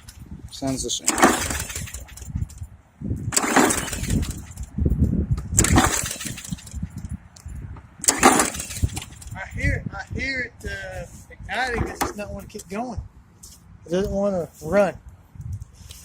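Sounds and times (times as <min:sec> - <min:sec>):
mower engine firing: 0:00.0 - 0:04.8, 0:05.5 - 0:07.2, 0:08.0 - 0:09.6
mower recoil starter cranking: 0:00.0 - 0:04.8, 0:05.5 - 0:09.5.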